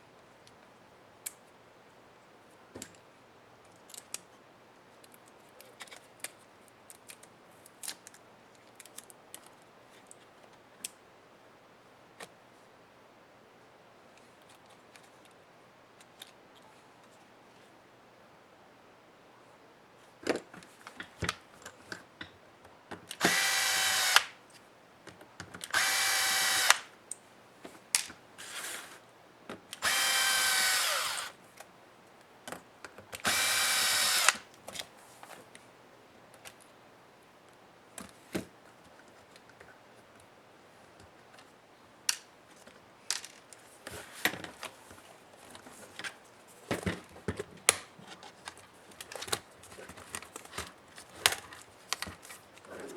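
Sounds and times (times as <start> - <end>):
electric screwdriver whirring: 23.2 - 24.3, 25.7 - 26.9, 29.8 - 31.4, 33.2 - 34.4.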